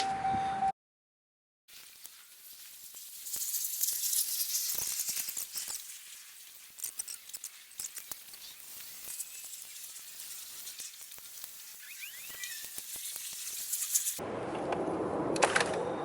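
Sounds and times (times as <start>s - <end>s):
steady hiss: 1.7s - 14.2s.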